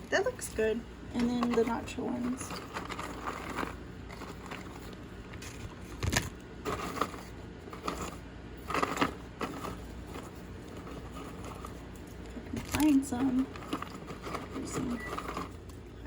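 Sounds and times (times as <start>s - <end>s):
chip bag rustling: 1.4s - 11.9s.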